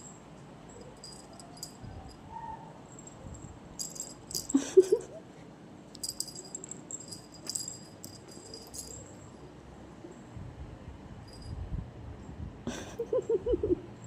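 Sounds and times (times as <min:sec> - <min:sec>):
small bell jingling: 0:00.0 - 0:02.2, 0:02.9 - 0:04.9, 0:06.0 - 0:09.4, 0:11.2 - 0:11.6.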